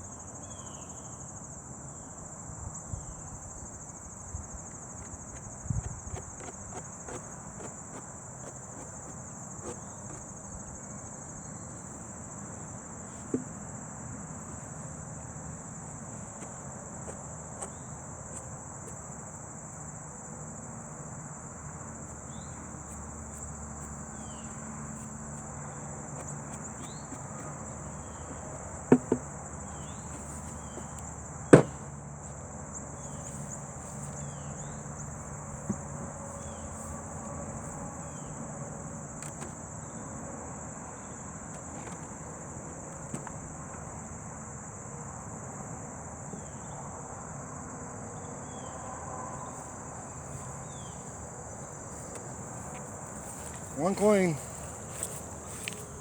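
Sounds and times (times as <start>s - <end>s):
crickets chirping: 0.0s - 56.0s
sharp knocks: 28.9s - 29.3s, 31.5s - 31.8s.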